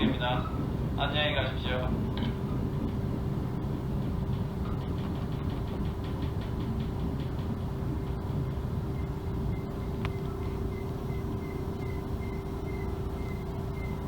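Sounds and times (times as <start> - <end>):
train rumbling: 0.0 - 14.0
rapid ticking: 4.0 - 14.0.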